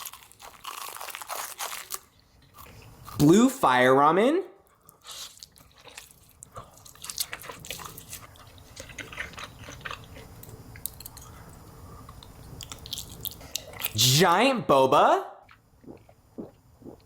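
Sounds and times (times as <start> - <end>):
wet chewing of noodles: 4.7 - 14.0.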